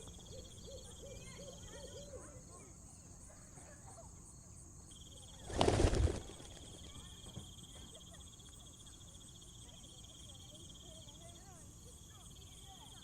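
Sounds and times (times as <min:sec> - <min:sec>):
insect drone: 0:00.0 - 0:13.0
pigeon wings fluttering: 0:05.4 - 0:07.4.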